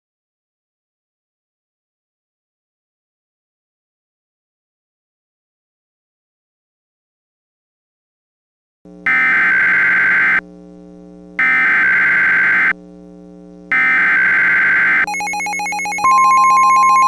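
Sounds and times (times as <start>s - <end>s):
buzzing tone: 8.9s - 17.0s
low steady hum: 10.4s - 11.4s, 12.8s - 13.8s
steady warning alert tone: 13.7s - 17.0s
warbling data bursts: 13.7s - 17.0s.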